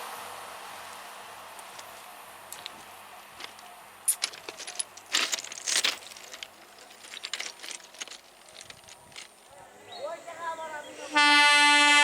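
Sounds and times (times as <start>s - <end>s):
rattling: 3.4s - 9.4s.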